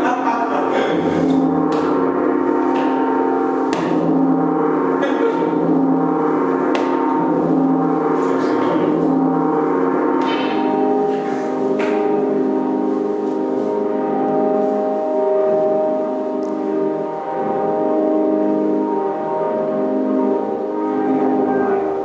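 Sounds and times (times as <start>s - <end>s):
gong-like ringing tones: 0.0s - 22.0s.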